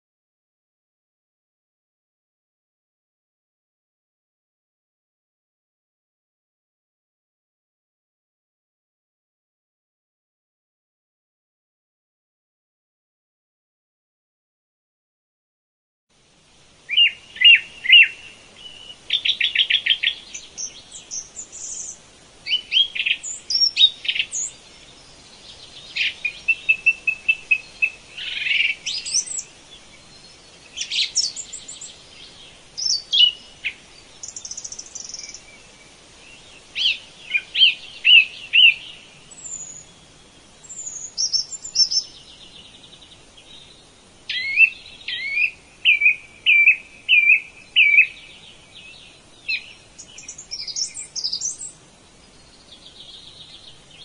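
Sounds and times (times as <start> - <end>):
songbirds singing: 16.3 - 54.0.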